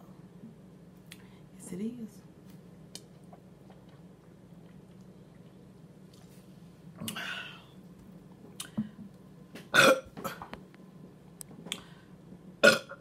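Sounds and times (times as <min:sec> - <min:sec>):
woman burping loudly: 0:09.8 - 0:10.4, 0:12.6 - 0:13.0.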